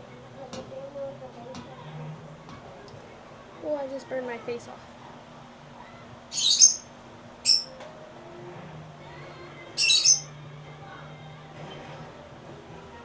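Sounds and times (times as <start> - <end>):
bird squawking: 6.3 - 7.7, 9.8 - 10.3.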